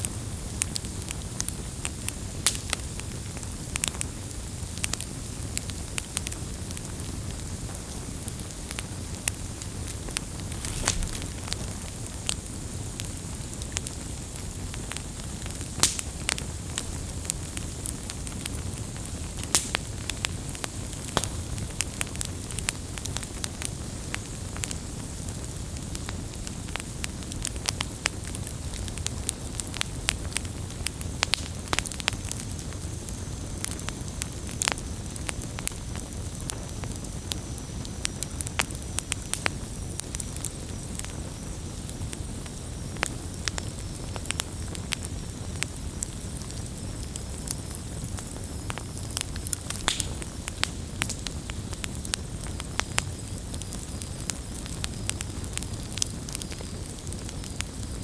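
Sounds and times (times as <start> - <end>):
campfire crackling and popping: 0.0 - 58.0
rush of flame: 9.8 - 14.2, 45.9 - 58.0.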